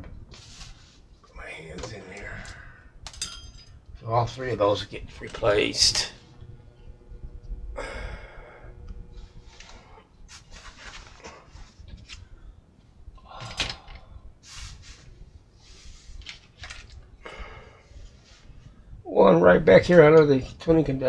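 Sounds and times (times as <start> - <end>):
rubbing and handling noises: 0.0 - 7.0, 8.9 - 17.2.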